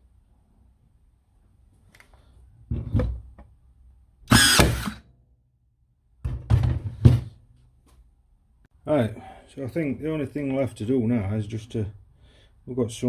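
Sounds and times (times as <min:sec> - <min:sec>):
nailer driving nails into wood: 0:04.3 - 0:05.0.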